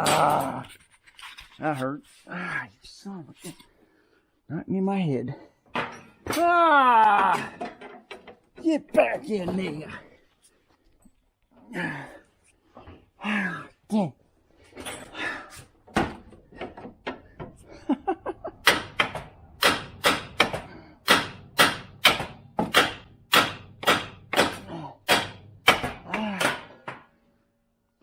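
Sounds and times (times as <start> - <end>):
person grunting: 0.0 - 0.7, 6.3 - 7.7, 11.6 - 12.2, 13.2 - 14.2, 24.6 - 25.1, 26.0 - 26.8
hard knocks on metal: 18.6 - 27.1.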